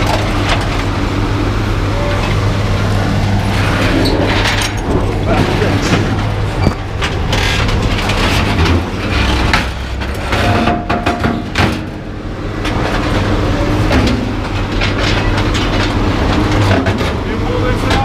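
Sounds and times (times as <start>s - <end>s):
heavy engine running: 0.0s - 18.0s
scrap metal clanking: 3.5s - 12.0s.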